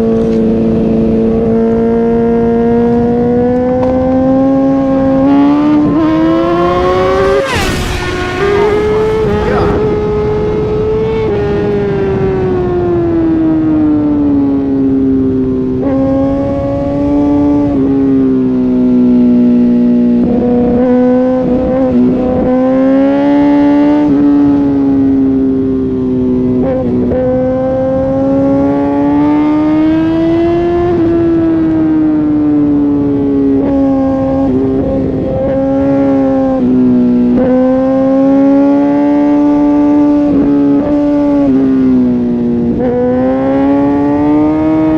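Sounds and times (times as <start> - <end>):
motorcycle engine revving high: 0.5 - 44.9
wind rushing: 4.9 - 10.8.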